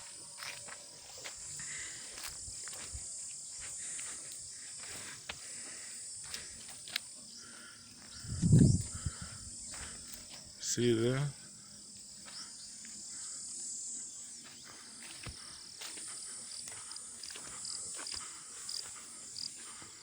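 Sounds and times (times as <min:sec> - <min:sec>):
high-pitched insect chirring: 0:00.0 - 0:05.0, 0:05.9 - 0:19.8.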